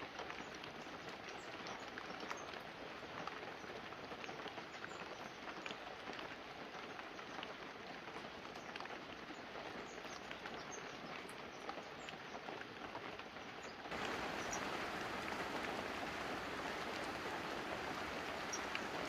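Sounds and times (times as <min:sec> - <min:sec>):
light rain on leaves and roof: 0:00.0 - 0:19.0.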